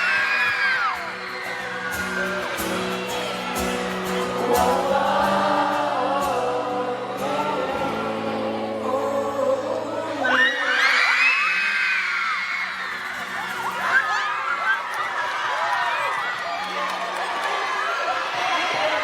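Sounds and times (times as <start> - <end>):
fans screaming: 0.0 - 9.1, 9.8 - 19.0
live pop band playing: 0.0 - 10.7
person singing: 2.7 - 11.8.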